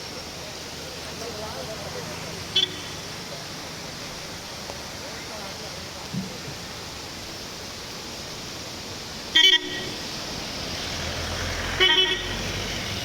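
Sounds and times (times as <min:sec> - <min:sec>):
steady hiss: 0:00.0 - 0:13.0
vehicle horn toots: 0:02.6 - 0:03.1, 0:09.4 - 0:10.0, 0:11.8 - 0:12.4.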